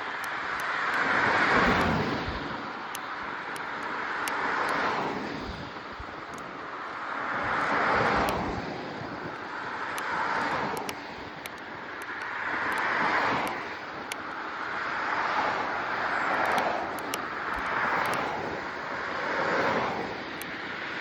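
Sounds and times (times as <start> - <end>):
rushing wind noise: 0.0 - 21.0
faint high ticks: 9.9 - 14.2, 16.3 - 18.3.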